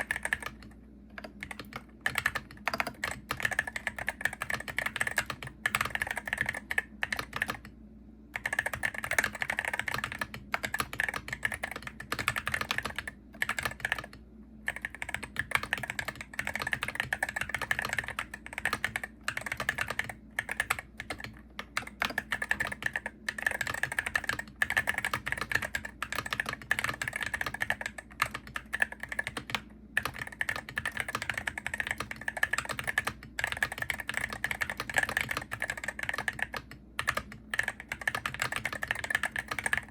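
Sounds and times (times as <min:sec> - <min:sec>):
rapid keyboard typing: 0:00.0 - 0:39.9.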